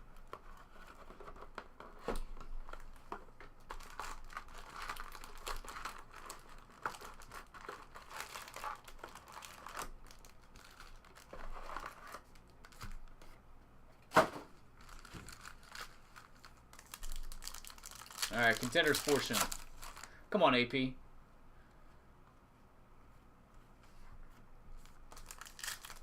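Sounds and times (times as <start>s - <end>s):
foil wrappers crinkling and tearing: 2.6s - 13.1s, 14.8s - 20.2s, 24.8s - 26.0s.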